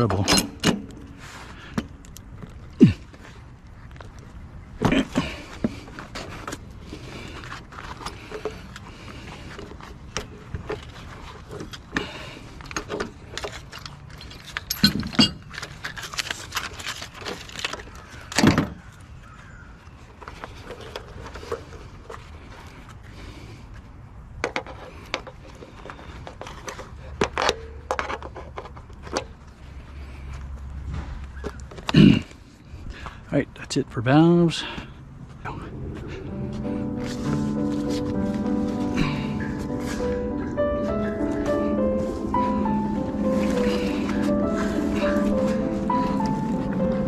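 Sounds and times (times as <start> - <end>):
traffic hum: 0.0 - 47.0
scrap metal clinking and rattling: 12.7 - 17.9.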